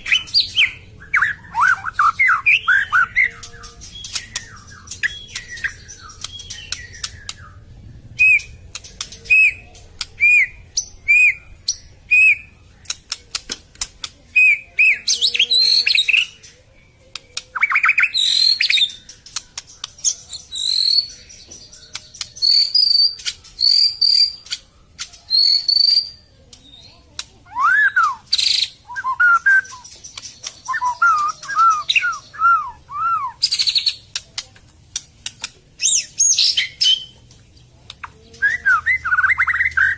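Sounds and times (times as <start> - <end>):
bird singing whistled song: 0.0 - 12.6, 14.4 - 26.9, 27.5 - 34.2, 35.8 - 37.2, 38.4 - 39.9
bird sharp clicks: 4.0 - 7.5, 12.8 - 14.2, 33.4 - 36.1.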